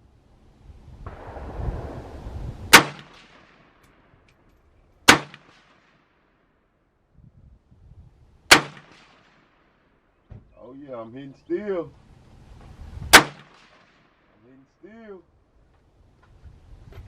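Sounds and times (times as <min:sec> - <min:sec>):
rifle shots with echo: 0:01.1 - 0:04.3, 0:05.0 - 0:06.5, 0:08.5 - 0:10.0, 0:13.1 - 0:14.4.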